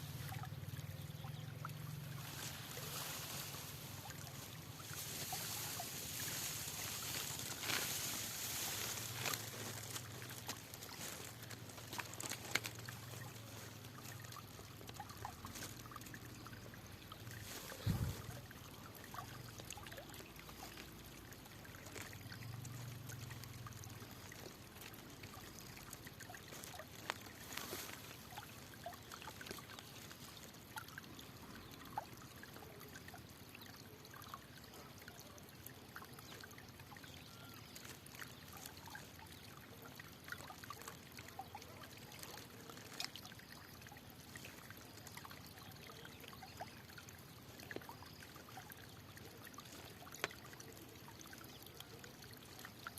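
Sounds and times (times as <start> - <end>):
stream trickling: 0.0 - 52.9
water splashes and drips: 0.0 - 52.9.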